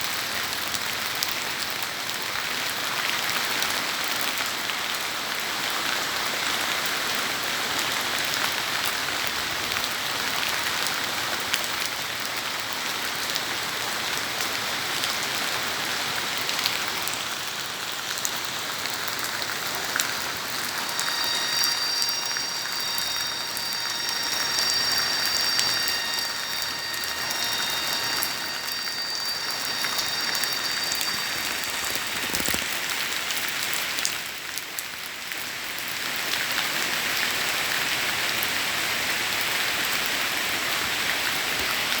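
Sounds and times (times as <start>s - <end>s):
steady rain hissing: 15.7s - 33.0s
faint high steady tones: 18.8s - 33.7s.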